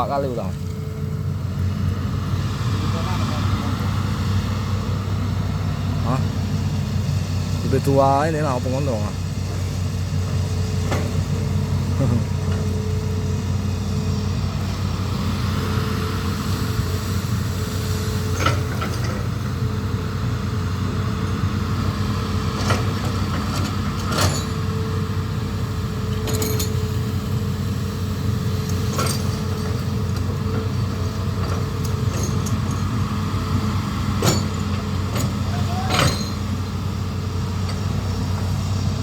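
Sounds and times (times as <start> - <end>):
diesel engine running: 0.0 - 39.0
sharp metal knocks: 34.2 - 36.5.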